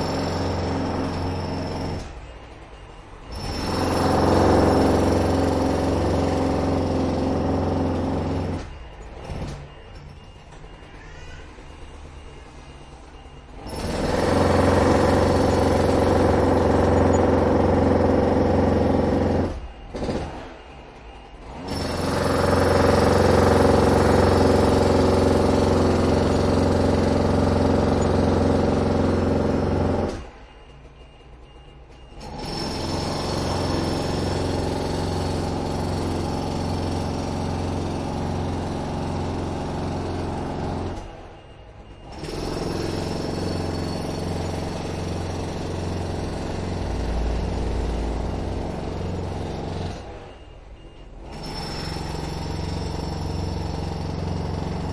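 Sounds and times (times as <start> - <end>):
heavy machinery engine running: 0.0 - 54.9.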